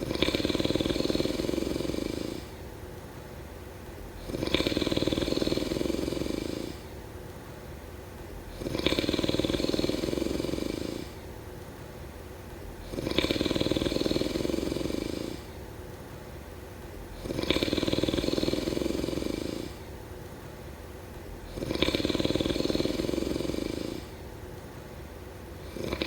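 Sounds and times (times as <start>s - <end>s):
person snoring: 0.0s - 2.6s, 4.2s - 7.0s, 8.5s - 11.3s, 12.8s - 15.6s, 17.1s - 20.0s, 21.5s - 24.2s, 25.6s - 26.0s.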